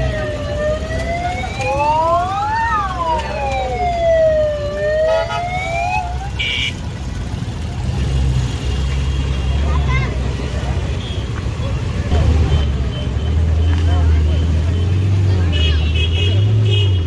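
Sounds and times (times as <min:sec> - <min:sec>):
vehicle siren wailing: 0:00.0 - 0:06.4.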